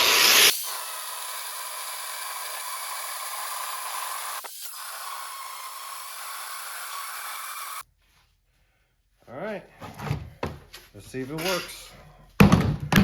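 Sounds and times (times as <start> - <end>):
power grinder cutting metal: 0.0 - 7.8.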